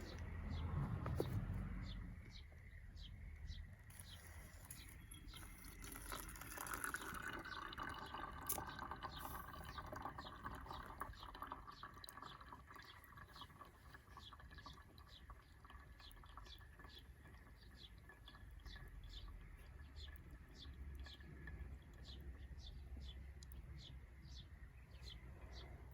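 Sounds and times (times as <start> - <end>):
water pouring into a cup: 3.9 - 22.6.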